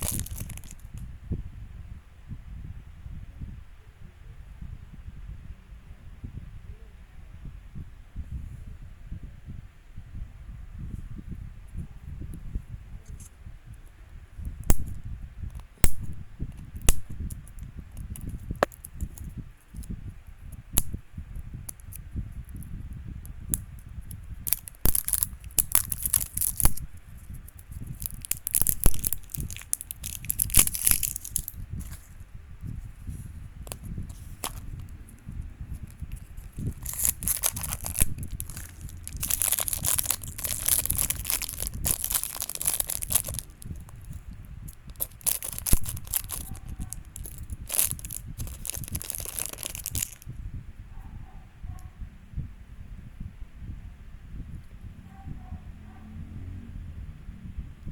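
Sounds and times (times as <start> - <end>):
plastic packaging tearing and crinkling: 0.0 - 1.0, 16.6 - 19.9, 24.4 - 32.2, 33.7 - 34.9, 35.8 - 50.2.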